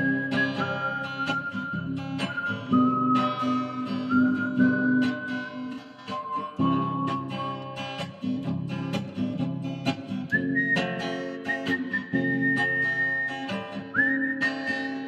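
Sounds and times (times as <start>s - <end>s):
person whistling a melody: 0.0s - 7.8s, 10.3s - 15.0s
strummed acoustic guitar: 0.0s - 15.0s.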